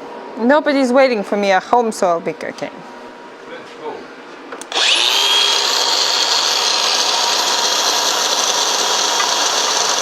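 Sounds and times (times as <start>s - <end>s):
electric grinder grinding steel: 4.7s - 10.0s.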